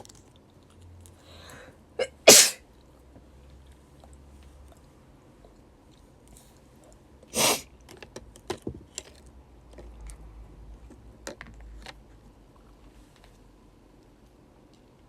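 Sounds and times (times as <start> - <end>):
woman sneezing: 2.0 - 2.6.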